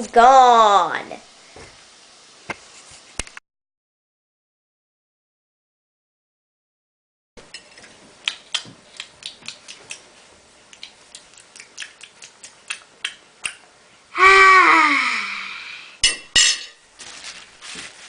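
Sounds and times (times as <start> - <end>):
dishes and cutlery clinking: 16.0 - 16.8.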